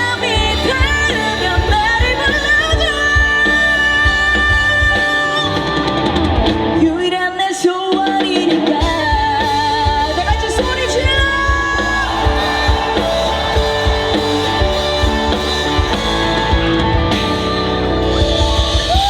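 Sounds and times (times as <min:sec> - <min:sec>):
woman singing: 0:00.0 - 0:06.0, 0:06.8 - 0:13.0
live band music: 0:00.0 - 0:19.0.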